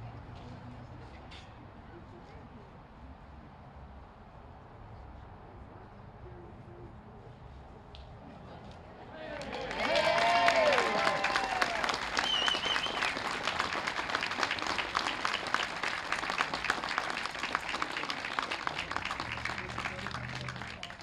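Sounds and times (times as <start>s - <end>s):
crowd applauding: 9.2s - 21.0s.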